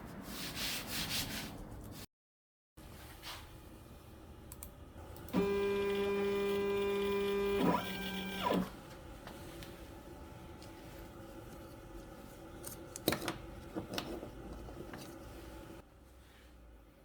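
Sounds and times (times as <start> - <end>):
stepper motors whining: 5.1 - 8.8.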